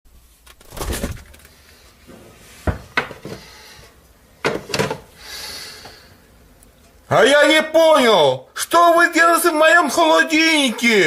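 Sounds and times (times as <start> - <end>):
household objects knocking and clattering: 2.7 - 3.4, 4.4 - 5.1.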